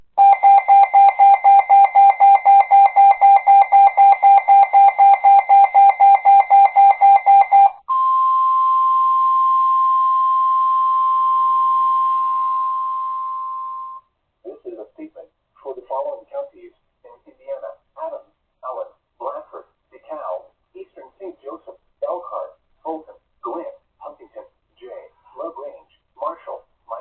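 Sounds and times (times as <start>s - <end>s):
steady alarm tone: 0.2s - 14.1s.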